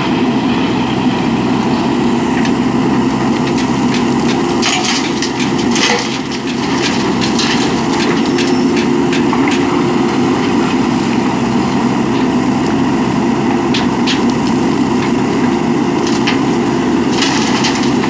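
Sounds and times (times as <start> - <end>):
diesel engine running: 0.0 - 18.0
gravel and stones clattering: 1.8 - 18.0.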